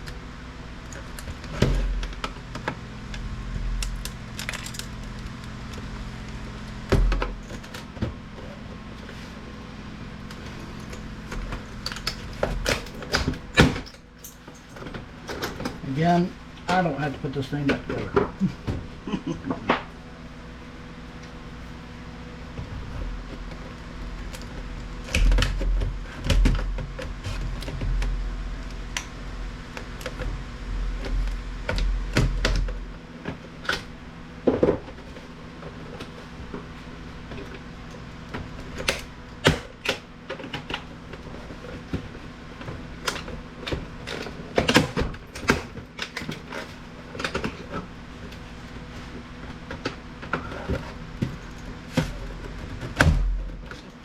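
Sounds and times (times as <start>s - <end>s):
hand tools and parts clattering: 10.4s - 15.8s.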